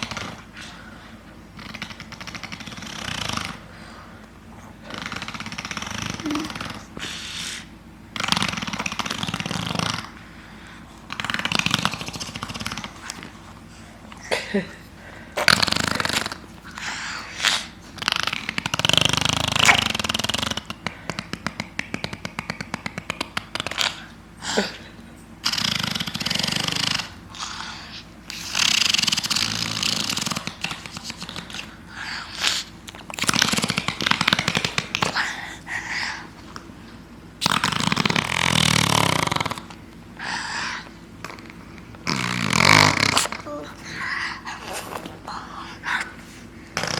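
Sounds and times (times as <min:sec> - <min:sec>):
toddler blowing raspberries: 0:04.8 - 0:10.1, 0:37.4 - 0:46.2.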